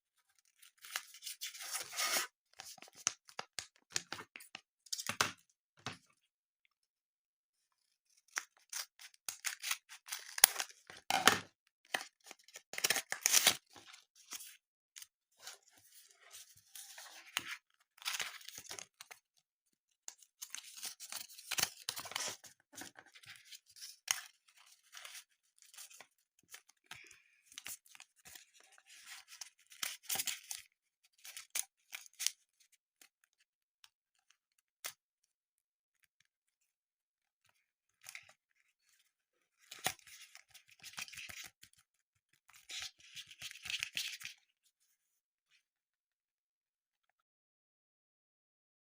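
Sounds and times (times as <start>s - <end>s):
packaging tearing and rustling: 12.8s - 13.6s.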